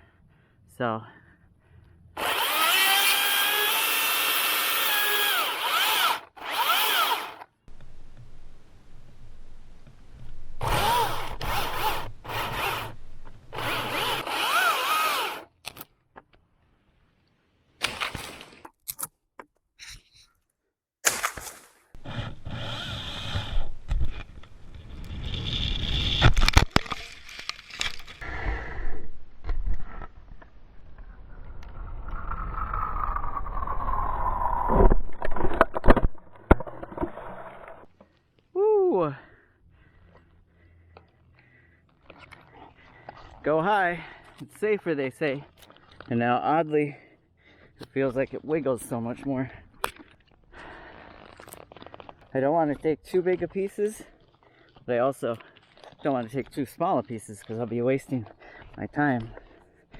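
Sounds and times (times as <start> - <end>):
chainsaw cutting wood: 2.2 - 9.2, 10.5 - 15.6, 21.1 - 28.2
wood cracking: 21.0 - 28.2.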